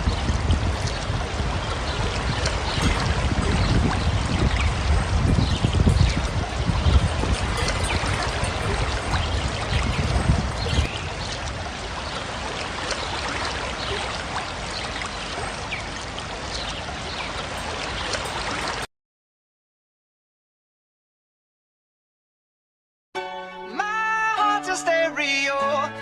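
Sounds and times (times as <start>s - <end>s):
rushing water: 0.0s - 18.9s.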